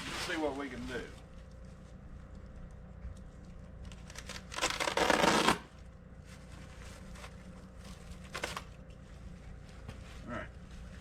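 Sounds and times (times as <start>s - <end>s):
paper sack tearing open: 4.1s - 5.7s, 8.3s - 8.7s.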